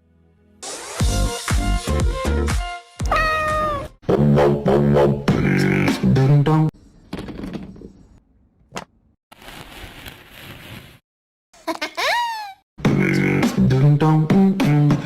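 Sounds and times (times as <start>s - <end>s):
background music: 0.0s - 3.1s, 12.8s - 15.0s
cat meowing: 3.0s - 3.9s.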